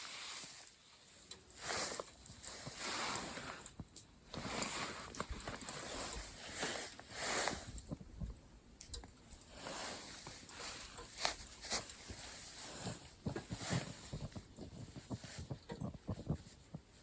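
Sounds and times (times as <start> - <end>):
hands rustling and knocking: 10.2 - 17.0.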